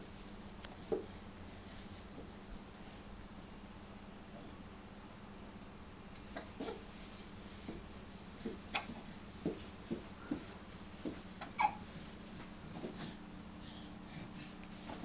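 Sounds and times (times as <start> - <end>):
baby hiccuping: 11.6 - 11.8.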